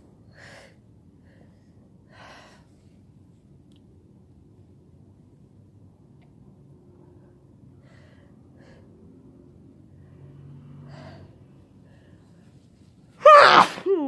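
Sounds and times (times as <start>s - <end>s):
person sneezing: 13.2s - 14.0s.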